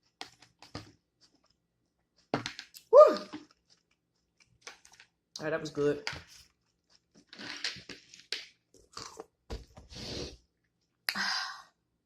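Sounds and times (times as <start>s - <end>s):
crunching and chewing food: 0.0s - 5.4s, 6.2s - 9.4s.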